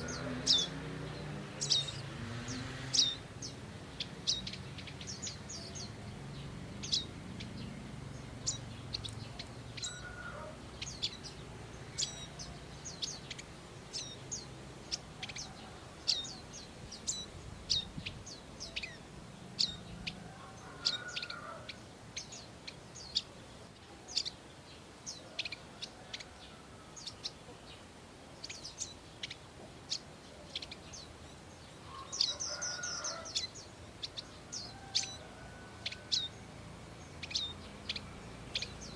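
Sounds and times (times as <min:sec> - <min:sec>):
buzzy bird trill: 0:00.0 - 0:24.4.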